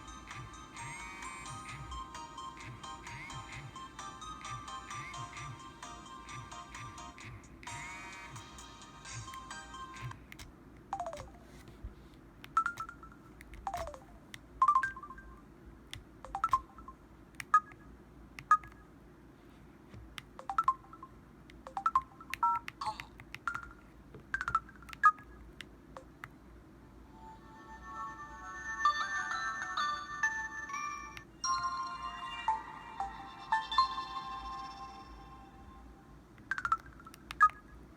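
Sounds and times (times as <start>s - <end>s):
phone electronic beeps and clicks: 0.2s - 5.6s, 11.0s - 11.5s, 12.5s - 15.4s, 16.2s - 18.9s, 20.4s - 26.2s, 36.4s - 37.8s
quick falling blips: 12.4s - 15.4s, 16.2s - 18.9s.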